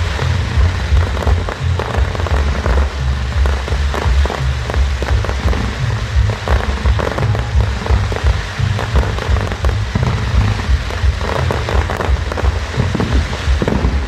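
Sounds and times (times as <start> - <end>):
fireworks bursting and crackling: 0.0 - 14.0
music with heavy bass: 0.0 - 14.0.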